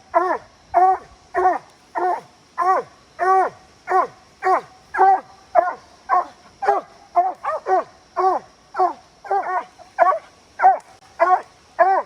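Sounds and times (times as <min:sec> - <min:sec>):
hound barking: 0:00.1 - 0:12.0.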